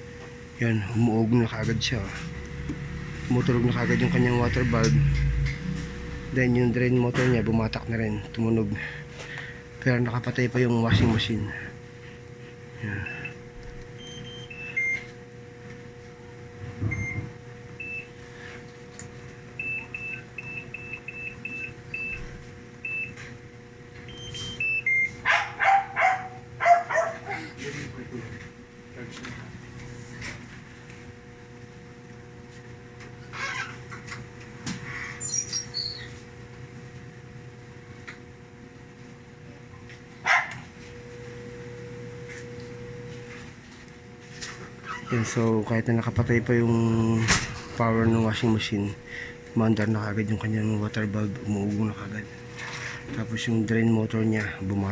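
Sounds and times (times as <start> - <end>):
steady electrical hum: 0.0 - 54.9
dog barking: 25.2 - 27.5, 40.2 - 40.6.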